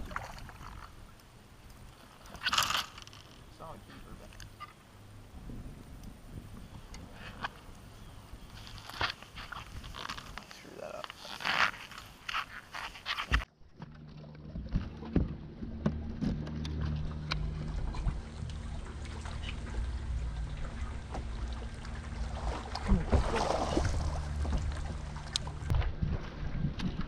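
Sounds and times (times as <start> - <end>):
boat motor humming: 2.9 - 8.6, 13.4 - 27.0.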